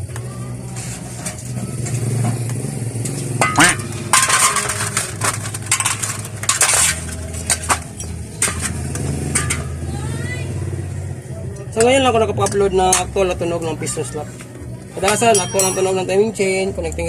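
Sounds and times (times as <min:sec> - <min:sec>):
metal tools clicking and clinking: 0:03.4 - 0:09.7, 0:15.0 - 0:16.0.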